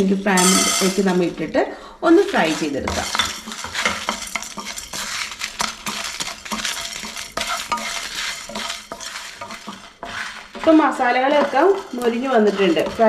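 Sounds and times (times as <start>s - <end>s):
spoon scraping and knocking on pan: 0.4s - 1.3s, 2.2s - 13.0s.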